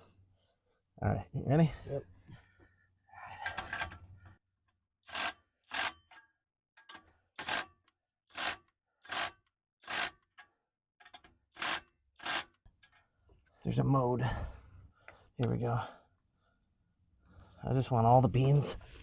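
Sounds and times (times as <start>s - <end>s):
hand tool rasping on metal: 8.3s - 13.0s.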